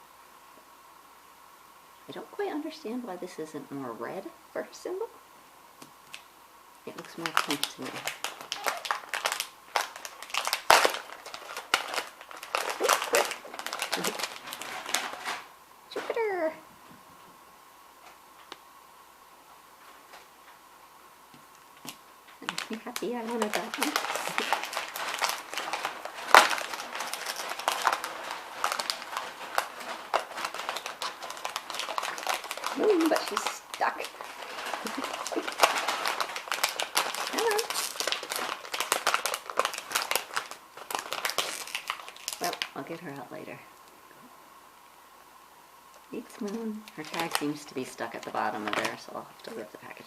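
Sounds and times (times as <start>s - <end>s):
plastic packaging crinkling: 6.0s - 6.3s, 6.9s - 16.5s, 21.5s - 43.3s, 46.1s - 50.0s.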